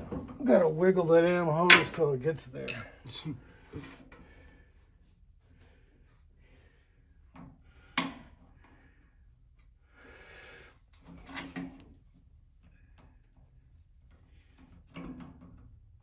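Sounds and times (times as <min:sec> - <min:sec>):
tools clicking and knocking: 0:01.7 - 0:03.1.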